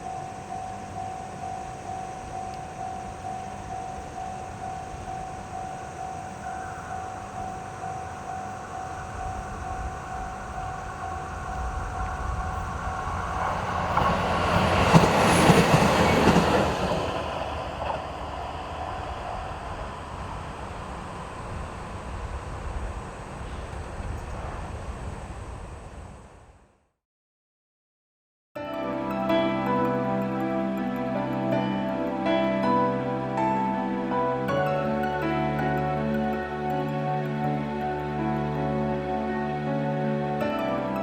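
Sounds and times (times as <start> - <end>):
level crossing bell ringing: 0.0 - 15.4, 28.6 - 33.0, 34.3 - 38.5
wheels clacking over rail joints: 0.0 - 22.4
diesel train passing: 0.0 - 26.6, 28.6 - 41.0.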